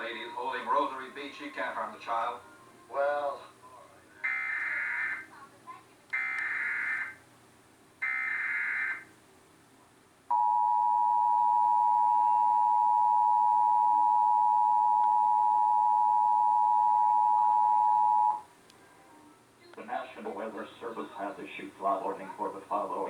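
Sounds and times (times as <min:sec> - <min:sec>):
two-tone attention signal: 0:10.3 - 0:18.4.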